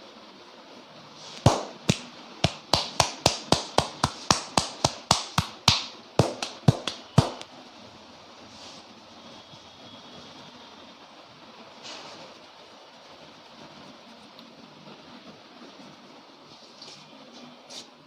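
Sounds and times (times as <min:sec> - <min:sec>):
hand strikes on head: 0:01.4 - 0:07.4.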